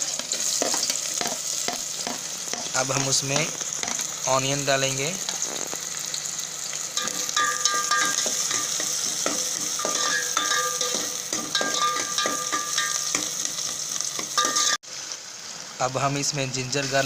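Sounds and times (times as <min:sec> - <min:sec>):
onions sizzling in oil: 0:00.0 - 0:17.0
utensil scraping and clinking on pan: 0:07.0 - 0:14.8.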